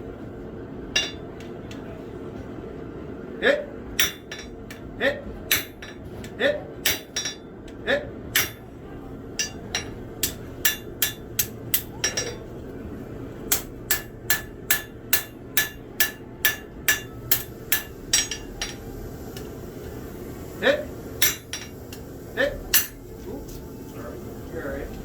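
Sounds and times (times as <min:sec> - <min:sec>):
hammer striking steel on anvil: 0:01.0 - 0:01.5, 0:04.0 - 0:04.8, 0:05.5 - 0:06.1, 0:06.8 - 0:07.5, 0:08.3 - 0:08.7, 0:09.4 - 0:12.5, 0:13.5 - 0:18.8, 0:21.2 - 0:22.0, 0:22.7 - 0:23.0.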